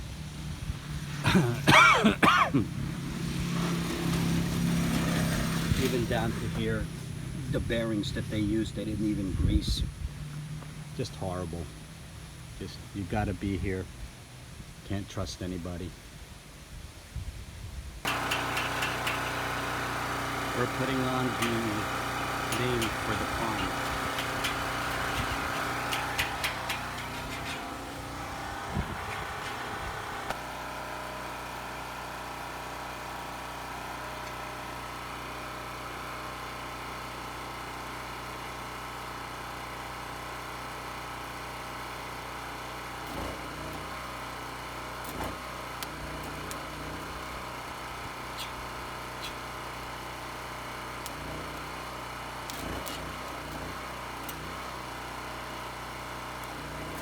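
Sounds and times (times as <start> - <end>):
small engine running: 0.0 - 13.7, 18.0 - 57.0
sharp clicks and knocks: 18.1 - 19.5, 20.8 - 30.4.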